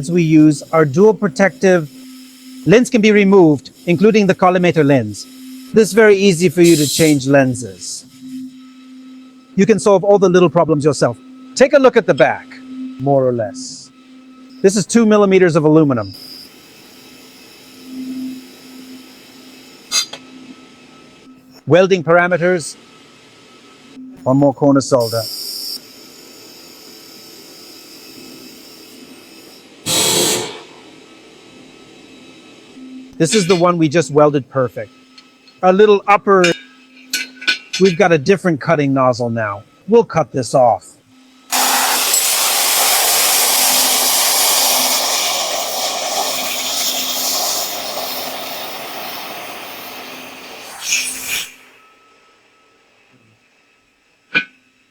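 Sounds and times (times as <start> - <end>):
laser welder hissing burst: 0.0 - 8.5, 25.0 - 31.3, 41.5 - 52.0
welding machine hum: 0.0 - 10.0, 14.4 - 21.6, 25.1 - 33.7, 41.4 - 52.0.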